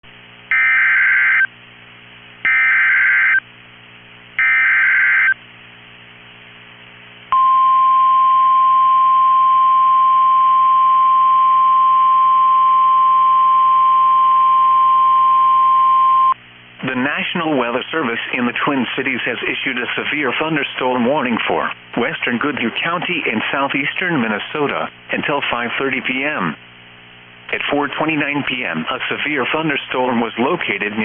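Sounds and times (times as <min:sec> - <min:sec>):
steady alarm tone: 0:00.5 - 0:01.5, 0:02.5 - 0:03.4, 0:04.4 - 0:05.4.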